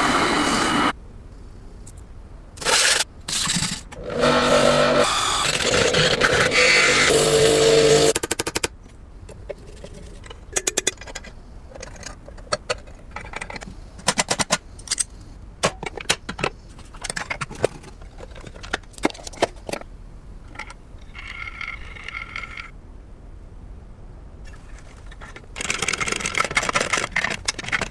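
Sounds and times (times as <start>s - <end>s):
sharp metal clicks and clattering: 8.1s - 8.8s, 24.5s - 27.9s.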